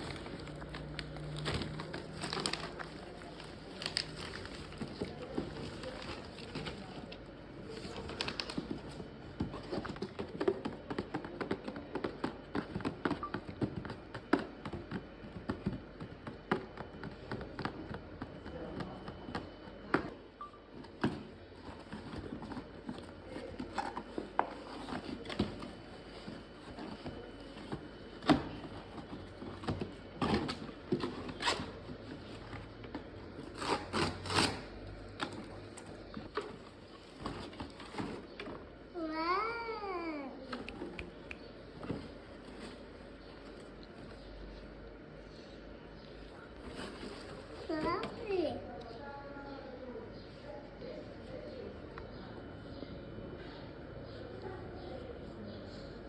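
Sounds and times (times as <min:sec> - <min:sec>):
plastic and cardboard crinkling: 0:00.0 - 0:19.5, 0:20.8 - 0:39.6, 0:46.2 - 0:48.4.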